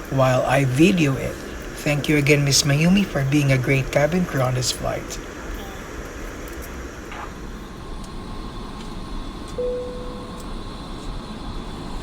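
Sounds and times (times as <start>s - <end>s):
aircraft cabin rumble and hiss: 0.0s - 12.0s
short steady tone: 9.6s - 11.1s.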